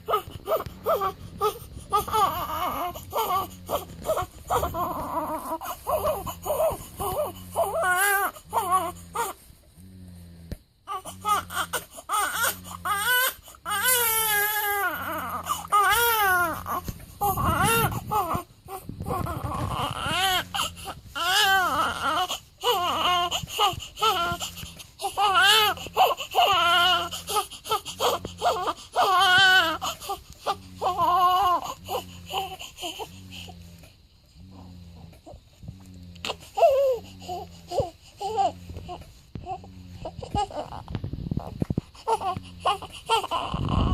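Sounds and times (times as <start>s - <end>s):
newborn baby crying: 0.0s - 9.4s, 10.9s - 33.2s, 36.3s - 40.9s, 42.0s - 43.9s
pulsing low hum: 0.0s - 11.7s, 14.8s - 43.9s.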